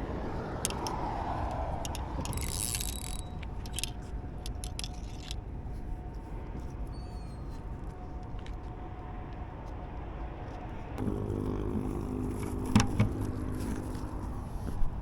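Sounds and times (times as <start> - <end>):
passing vehicle: 0.0 - 4.1, 10.8 - 15.0
traffic rumble: 0.0 - 15.0
fishing tackle clicks: 0.6 - 5.4.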